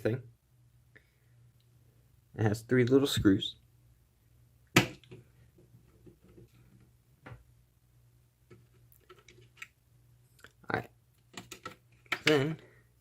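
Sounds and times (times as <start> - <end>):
faint steady hum: 0.0 - 13.0
clicks handling plastic parts: 11.2 - 12.5.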